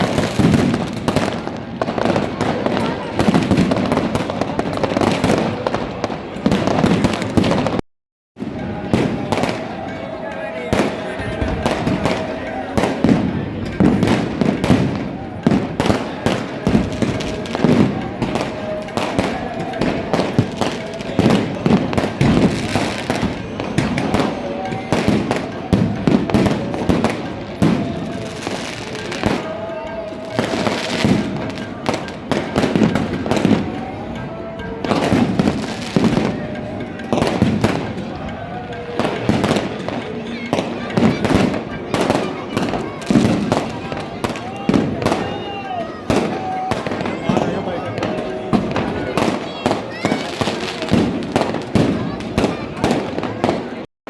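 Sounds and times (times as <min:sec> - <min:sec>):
firecrackers crackling and popping: 0:00.0 - 0:07.8, 0:08.4 - 0:53.9.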